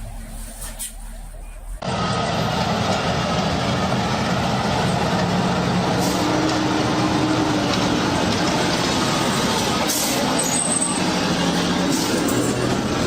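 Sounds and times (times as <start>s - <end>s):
heavy vehicle engine running: 0.0s - 13.0s.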